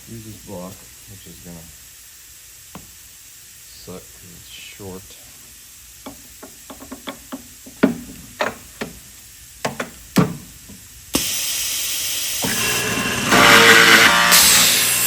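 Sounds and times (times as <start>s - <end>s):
power saw cutting wood: 6.1s - 9.0s, 12.4s - 15.0s
wooden pieces clicking and knocking: 6.1s - 9.0s, 9.6s - 10.5s.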